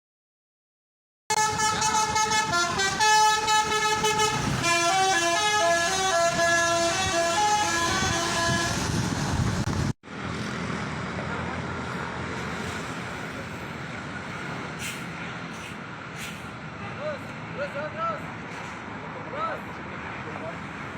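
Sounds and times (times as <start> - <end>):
bus musical horn: 1.3 - 9.7
bus engine noise: 1.3 - 20.9.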